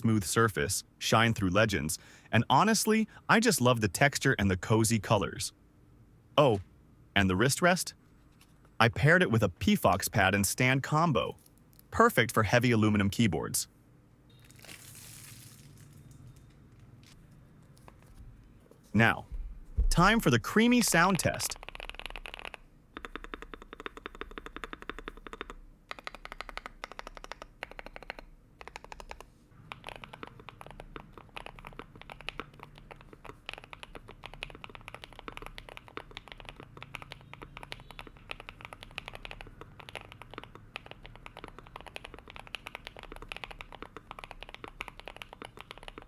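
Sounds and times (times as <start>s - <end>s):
typing on a mechanical keyboard: 20.9s - 46.0s.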